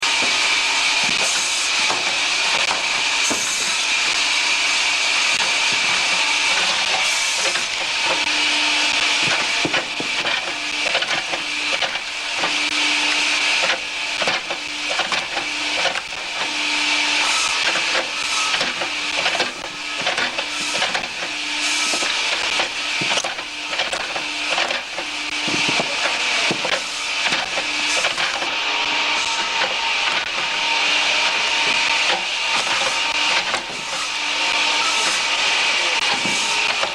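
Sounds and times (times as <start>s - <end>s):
hydraulic hiss: 0.0s - 36.9s
machine hum: 0.0s - 36.9s
logs cracking and knocking: 5.2s - 16.7s, 17.3s - 34.2s.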